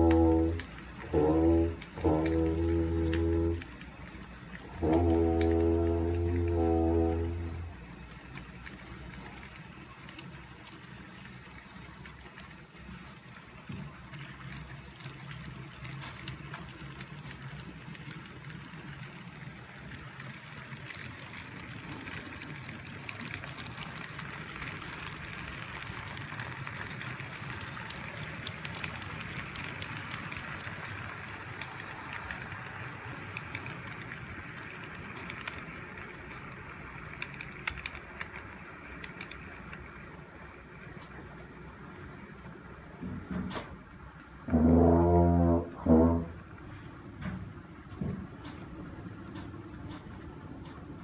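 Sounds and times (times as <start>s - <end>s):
model train whirring on track: 0.0s - 44.6s, 46.4s - 51.0s.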